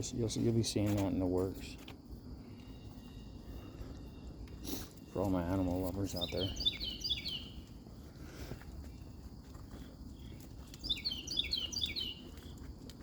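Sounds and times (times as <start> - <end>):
low steady background noise: 0.0 - 13.0
songbird chirping: 0.0 - 13.0.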